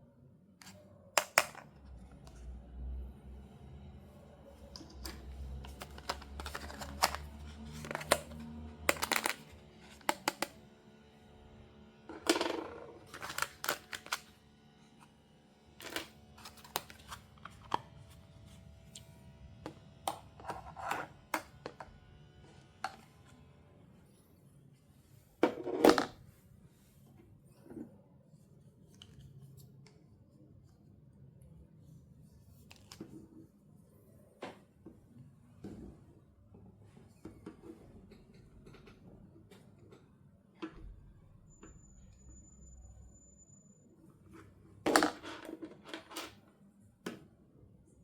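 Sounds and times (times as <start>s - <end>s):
packaging crinkling: 4.9s - 10.4s, 13.0s - 14.3s, 15.8s - 17.8s.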